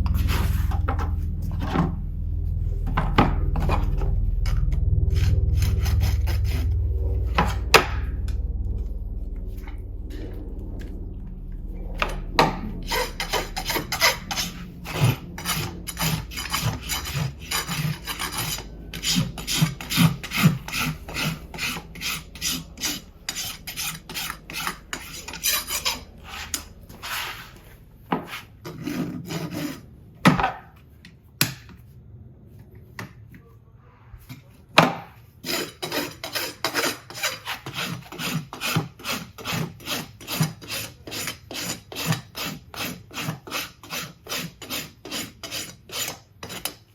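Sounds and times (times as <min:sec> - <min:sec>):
hoof rasp filing hoof: 0:35.4 - 0:46.9.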